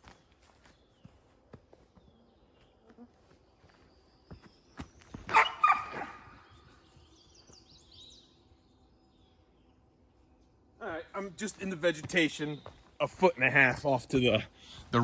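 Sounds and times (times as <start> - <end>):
faint bird chirps: 0.0 - 11.1
dog barking: 5.3 - 6.3.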